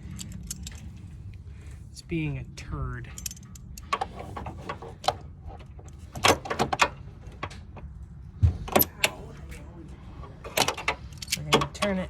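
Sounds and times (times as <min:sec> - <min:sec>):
clicks knocks and scraping: 0:03.2 - 0:09.2.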